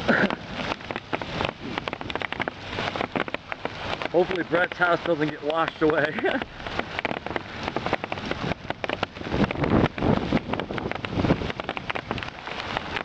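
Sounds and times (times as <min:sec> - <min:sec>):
hail and heavy rain pelting: 0:00.0 - 0:13.0
low rushing: 0:00.0 - 0:13.0.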